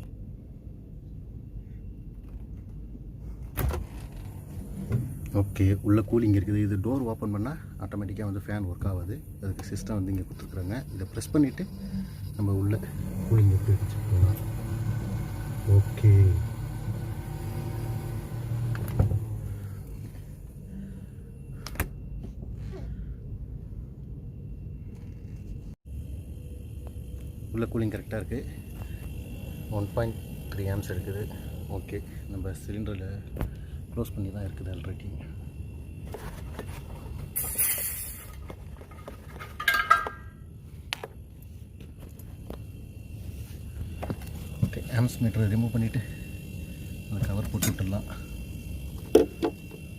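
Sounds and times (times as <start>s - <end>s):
refrigerator humming: 0.0s - 49.9s
gas hissing: 9.2s - 20.6s, 26.1s - 35.4s, 37.0s - 38.5s, 42.4s - 49.9s
metallic clinks: 39.6s - 40.4s.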